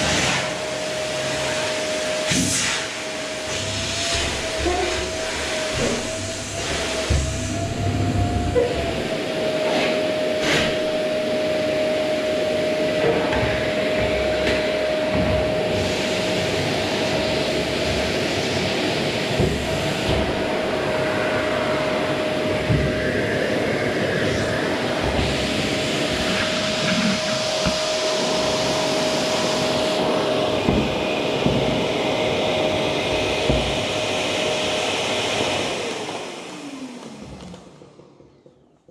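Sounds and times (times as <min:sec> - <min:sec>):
vacuum cleaner running: 0:00.0 - 0:38.9
knocks and bumps of vacuum: 0:03.5 - 0:09.2, 0:12.8 - 0:16.0, 0:17.0 - 0:23.6, 0:24.2 - 0:35.7.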